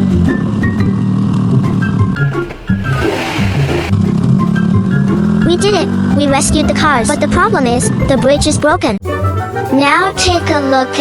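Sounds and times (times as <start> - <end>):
cartoon background music: 1.6 - 11.0
vehicle engine sound effect: 2.2 - 4.4.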